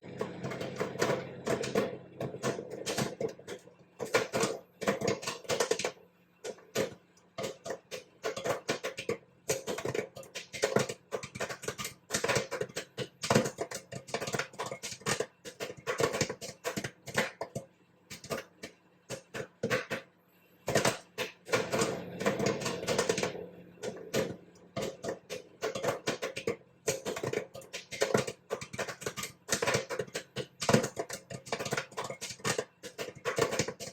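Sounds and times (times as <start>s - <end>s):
popcorn popping: 0.0s - 33.9s.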